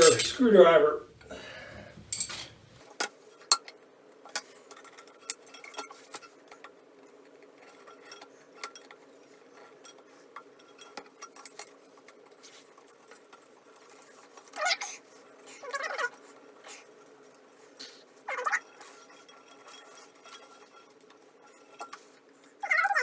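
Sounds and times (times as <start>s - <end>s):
screwdriver clinking on metal: 0.0s - 0.4s, 2.1s - 2.5s.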